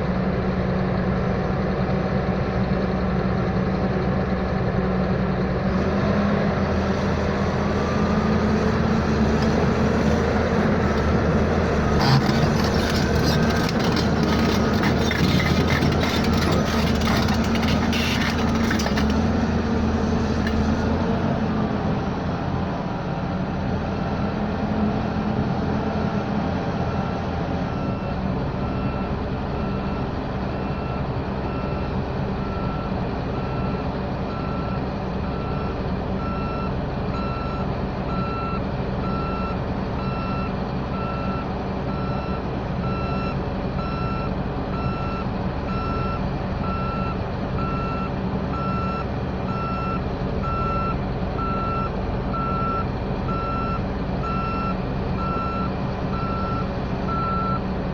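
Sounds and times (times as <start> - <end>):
engine drone: 0.0 - 35.6.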